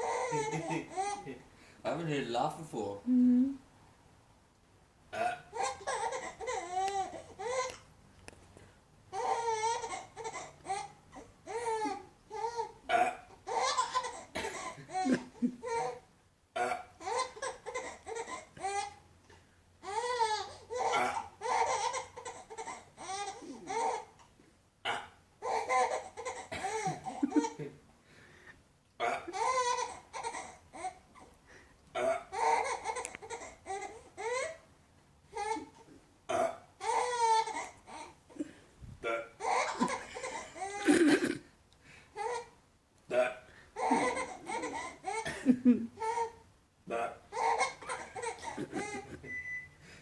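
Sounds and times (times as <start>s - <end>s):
baby laughing: 0.0s - 1.4s, 5.5s - 7.8s, 9.1s - 12.8s, 13.4s - 16.0s, 17.0s - 19.0s, 19.8s - 24.2s, 25.4s - 27.7s, 29.1s - 31.0s, 32.3s - 34.6s, 36.8s - 38.4s, 39.4s - 41.4s, 42.2s - 42.6s, 43.8s - 46.4s, 47.3s - 49.3s.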